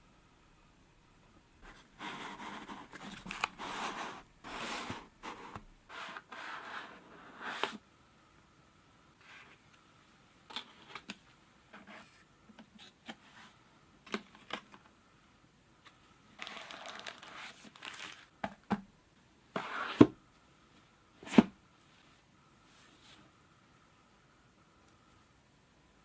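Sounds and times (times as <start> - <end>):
packaging rustling and crinkling: 16.4 - 18.4.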